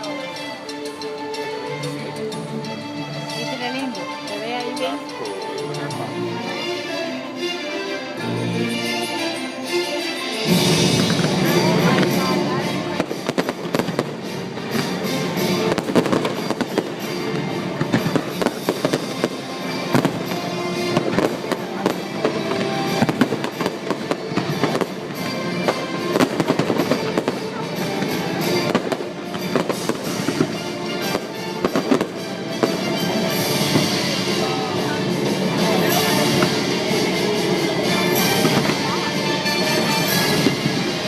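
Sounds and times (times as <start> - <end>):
loud show music: 0.0 - 41.0
fireworks bangs: 10.5 - 41.0.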